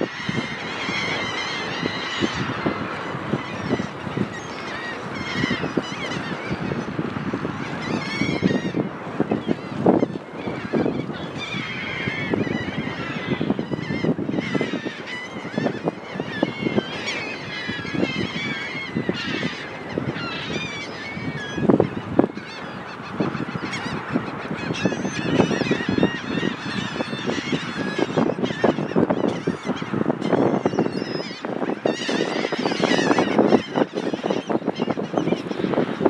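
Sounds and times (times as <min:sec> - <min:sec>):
seagulls squawking: 0:00.0 - 0:36.0.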